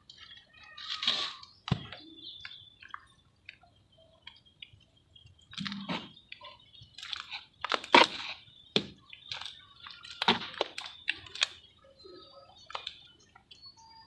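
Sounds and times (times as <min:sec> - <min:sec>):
cement shapes cracking and crumbling: 0:07.0 - 0:11.7.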